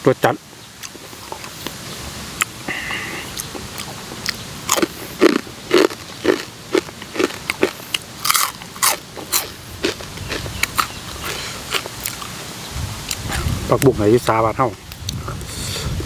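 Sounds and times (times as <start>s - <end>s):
person chewing crunchy food: 0.8s - 13.6s.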